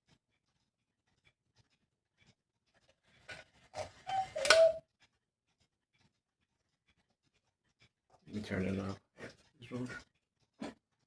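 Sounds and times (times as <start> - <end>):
cuckoo clock two-note call: 4.1 - 4.8.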